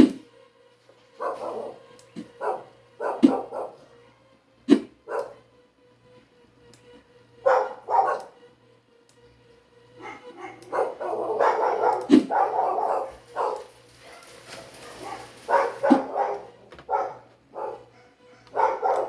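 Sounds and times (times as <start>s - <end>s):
dog barking: 1.2s - 4.0s, 5.0s - 5.4s, 7.4s - 8.4s, 10.0s - 19.0s.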